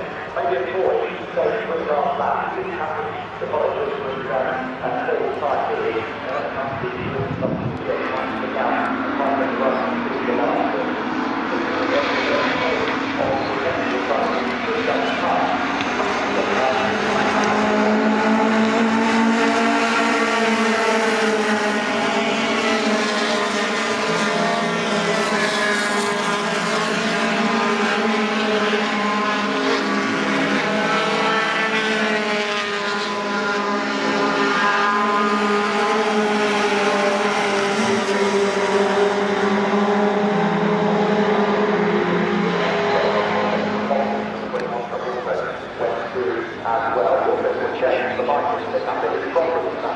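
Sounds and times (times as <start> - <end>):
racing truck engines: 0.0 - 49.9.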